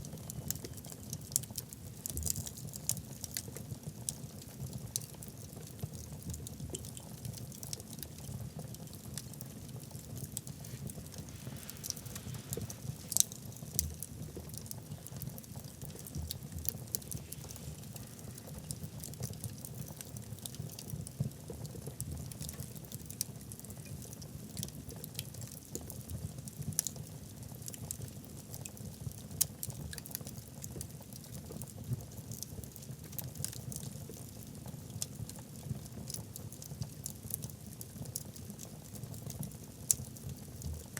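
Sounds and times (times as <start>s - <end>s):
wood crackling and popping: 0.0s - 40.9s
low roar of flames: 7.1s - 21.3s.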